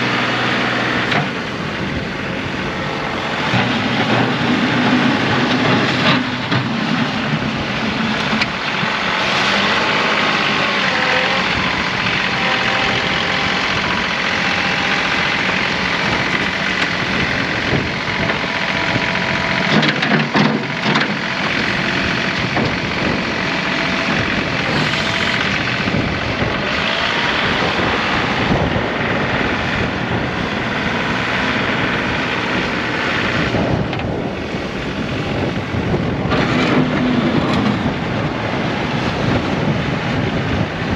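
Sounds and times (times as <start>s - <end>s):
diesel tractor running: 0.0s - 40.9s.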